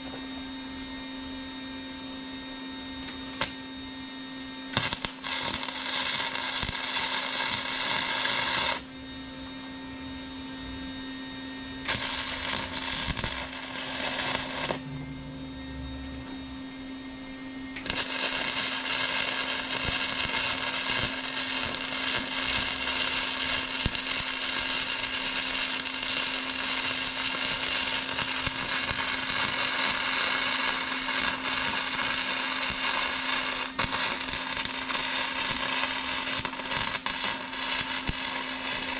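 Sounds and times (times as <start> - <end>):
steady low hum: 0.0 - 38.9
welding arc crackling: 3.1 - 3.6, 4.8 - 8.9, 11.8 - 14.8, 17.8 - 38.9.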